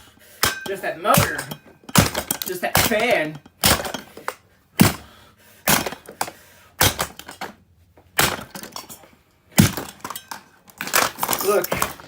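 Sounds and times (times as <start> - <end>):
blows smashing plastic: 0.0 - 12.0
plastic bits clattering: 5.7 - 12.0
plastic cracking: 5.7 - 12.0.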